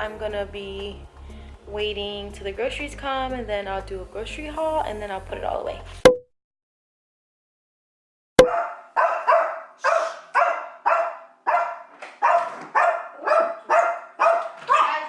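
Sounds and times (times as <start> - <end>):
dog barking: 8.4 - 15.0.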